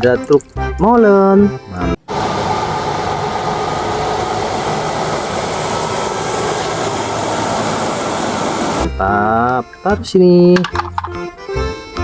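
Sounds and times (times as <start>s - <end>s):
running water rushing: 2.2s - 8.9s.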